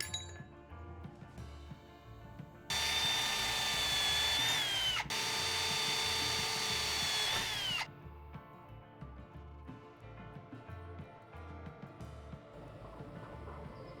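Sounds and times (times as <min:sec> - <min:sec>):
electric drill whining: 0:02.7 - 0:07.9.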